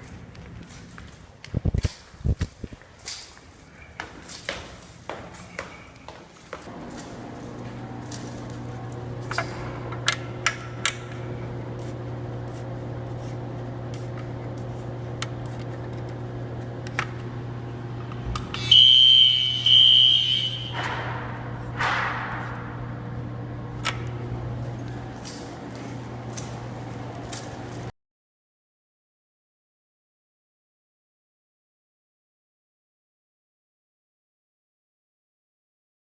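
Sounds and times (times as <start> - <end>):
low buzzing alarm horn: 6.7 - 27.3
loud high-pitched alarm blasts: 18.5 - 22.2.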